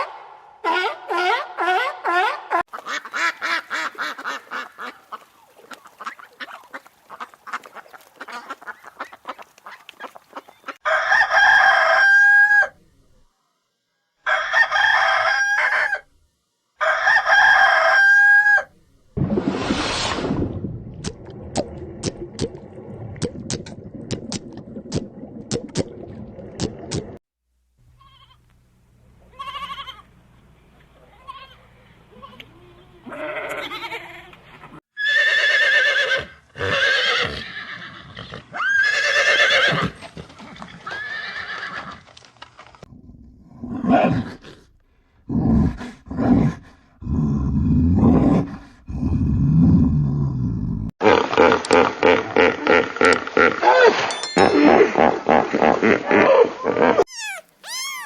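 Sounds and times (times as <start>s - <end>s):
wavering bleat: 29.3s - 30.1s, 31.1s - 34.4s, 57.0s - 58.0s
horse whinny: 35.0s - 40.0s, 57.0s - 58.0s.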